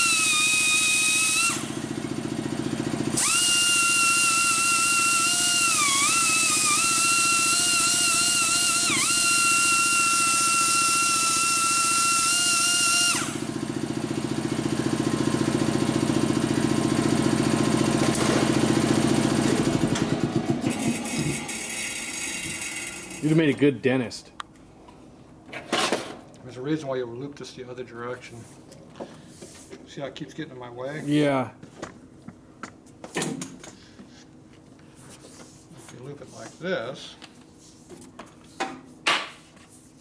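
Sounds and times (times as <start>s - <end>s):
die grinder whining: 0.0s - 23.4s.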